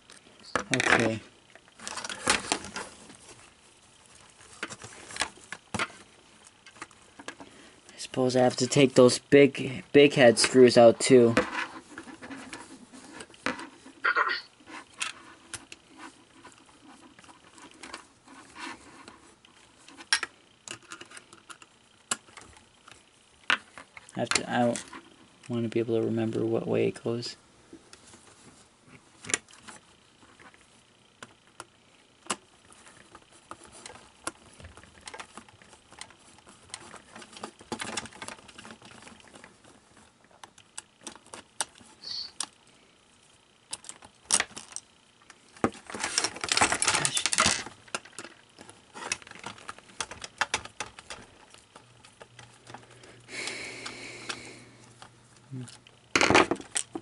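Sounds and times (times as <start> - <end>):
small screws and plastic parts rattling: 0.0 - 14.0, 14.6 - 26.8, 29.2 - 42.7, 43.3 - 54.4.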